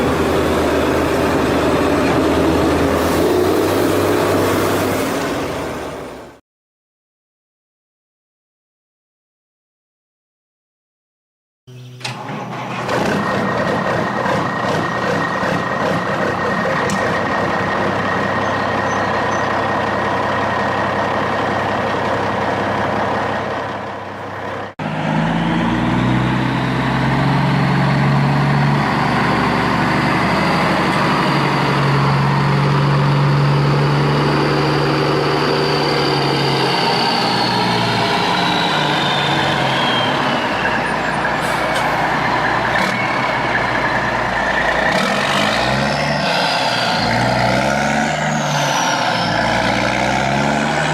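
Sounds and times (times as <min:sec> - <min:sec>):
heavy vehicle engine running: 0:00.0 - 0:06.4, 0:11.7 - 0:50.9
engine with rising and falling pitch: 0:11.7 - 0:50.9.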